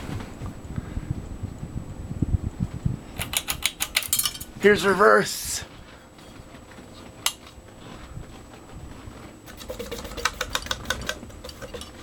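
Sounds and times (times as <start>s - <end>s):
faint hum: 0.0s - 12.0s
ceiling fan control click: 3.2s - 4.6s, 7.2s - 7.6s.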